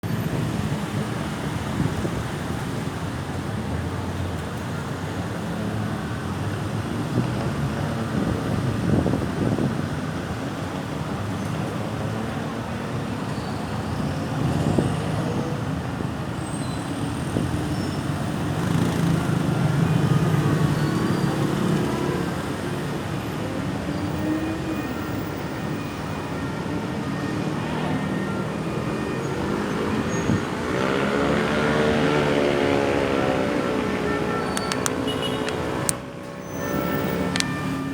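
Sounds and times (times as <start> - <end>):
passing vehicles: 0.0 - 37.9.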